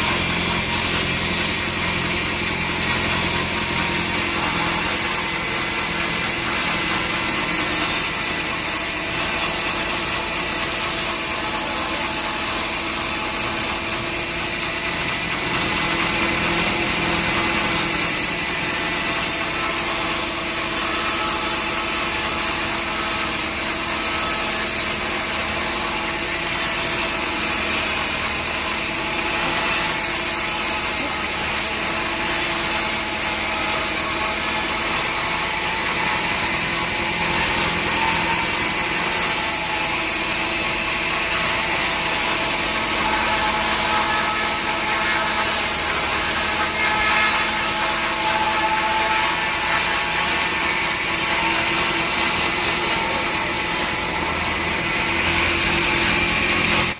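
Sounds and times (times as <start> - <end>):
saw cutting through log: 0.0 - 56.9.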